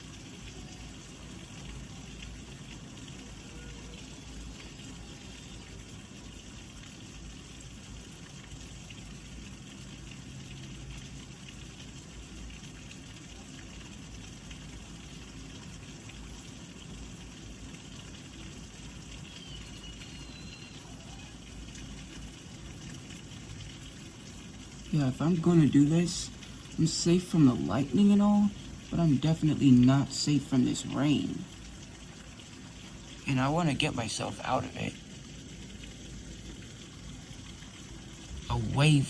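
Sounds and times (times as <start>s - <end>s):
heavy rain falling: 9.3s - 39.0s.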